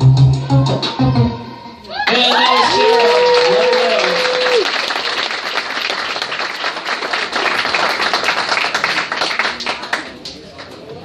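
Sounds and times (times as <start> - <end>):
audience applause: 2.1 - 10.7.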